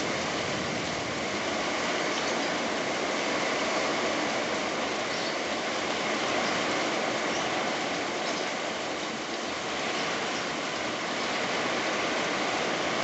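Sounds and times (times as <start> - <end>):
heavy rain in strong wind: 0.0 - 13.0.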